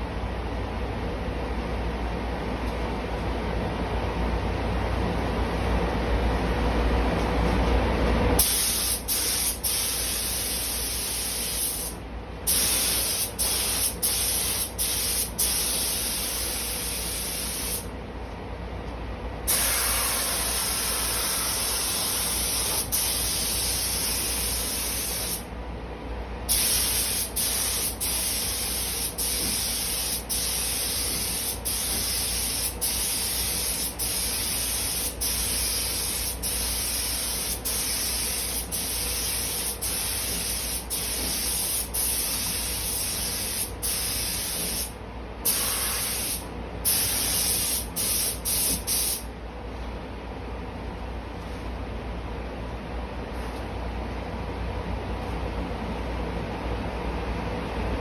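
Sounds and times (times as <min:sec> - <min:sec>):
paint spray gun hissing: 0:08.4 - 0:17.9, 0:19.5 - 0:25.4, 0:26.5 - 0:44.9, 0:45.5 - 0:49.2.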